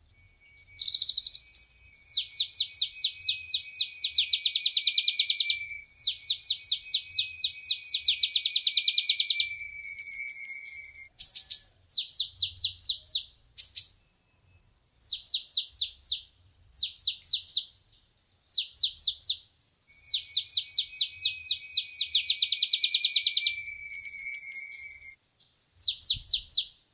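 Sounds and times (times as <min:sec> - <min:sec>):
sunbird chirping: 0:00.0 - 0:26.9
thin whistle: 0:00.1 - 0:12.7, 0:19.9 - 0:25.2.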